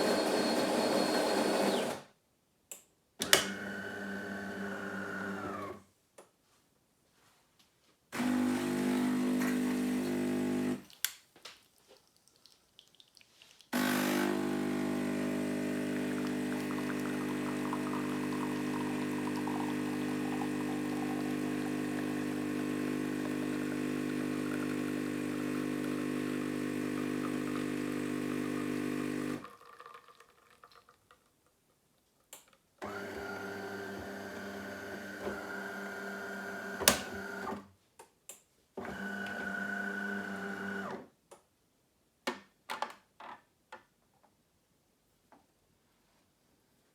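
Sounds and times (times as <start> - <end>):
coffee machine buzzing: 0.0 - 2.0, 3.4 - 5.7, 8.2 - 10.8, 13.8 - 29.9, 32.8 - 37.6, 38.9 - 40.9
high-pitched coffee machine whir: 0.0 - 2.0, 8.2 - 10.8, 13.8 - 29.5.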